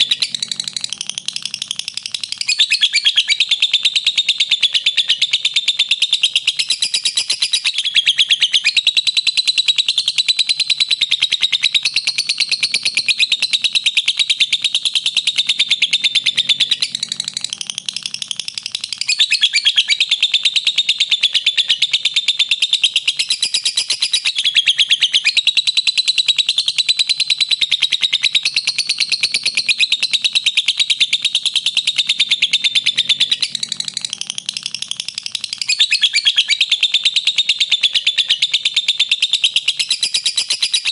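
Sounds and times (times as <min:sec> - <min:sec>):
lovebirds chirping: 0:00.0 - 0:05.4, 0:28.0 - 0:40.9.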